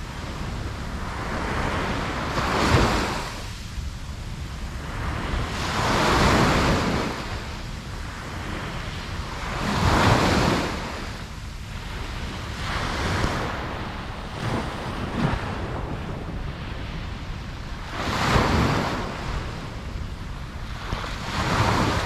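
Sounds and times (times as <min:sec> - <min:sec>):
ocean waves breaking on beach: 0:00.0 - 0:22.0
wind on microphone: 0:00.0 - 0:22.0.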